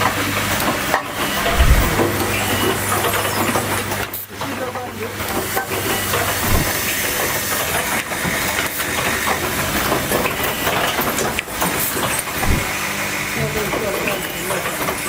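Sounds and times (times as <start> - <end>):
sharp mechanical clicks: 1.5 - 2.2, 12.4 - 12.7
hiss of air: 6.4 - 6.9, 12.4 - 12.7.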